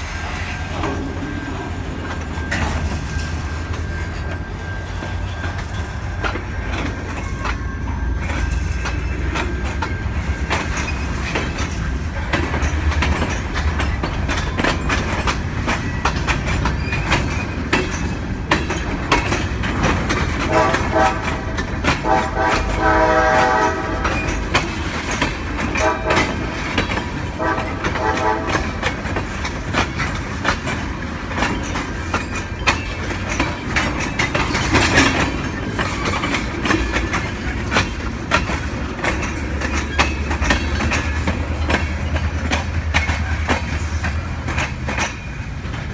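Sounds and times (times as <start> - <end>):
diesel locomotive engine rumble: 0.0 - 45.9
train wheels clicking over rail joints: 0.0 - 45.9
locomotive horn blasts: 20.4 - 24.5, 25.8 - 29.0.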